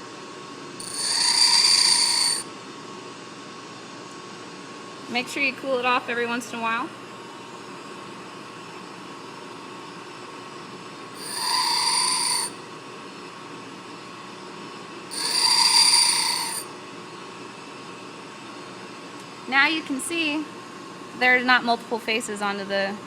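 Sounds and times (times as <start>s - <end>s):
bench grinder humming: 0.8s - 2.5s, 11.2s - 12.6s, 15.1s - 16.8s
drill bit grinding on wheel: 0.8s - 2.5s, 11.2s - 12.6s, 15.1s - 16.7s.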